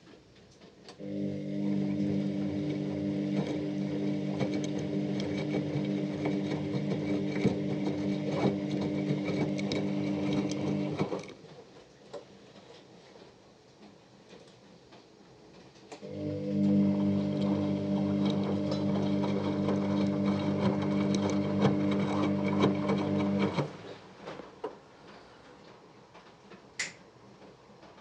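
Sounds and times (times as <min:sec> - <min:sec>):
washing machine motor hum: 0:01.0 - 0:11.4, 0:16.0 - 0:24.6.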